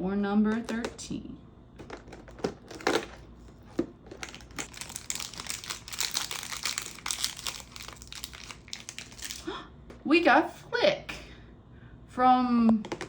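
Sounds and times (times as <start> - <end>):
packaging crinkling: 1.8 - 9.5.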